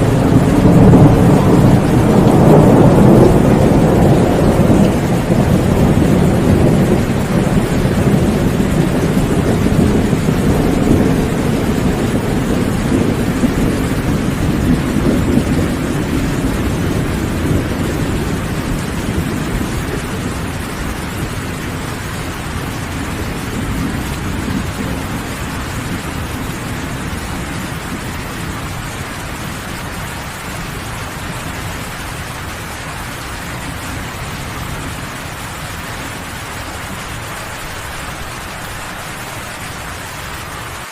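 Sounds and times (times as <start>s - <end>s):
heavy rain: 0.0s - 40.9s
thunder rumbling: 0.0s - 40.9s.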